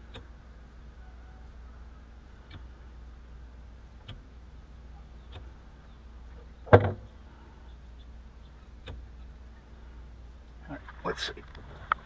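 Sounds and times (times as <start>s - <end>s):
low steady hum: 0.0s - 12.0s
sharp clunk: 6.7s - 7.1s.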